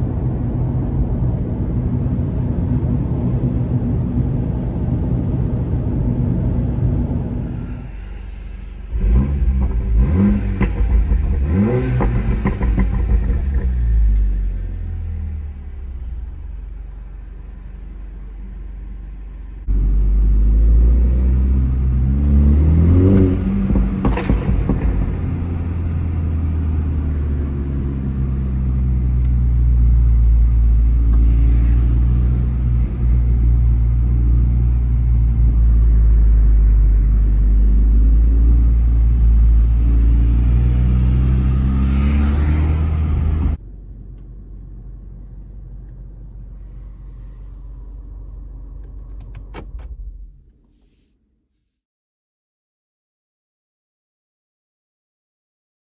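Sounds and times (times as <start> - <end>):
car engine accelerating: 0.0 - 50.9.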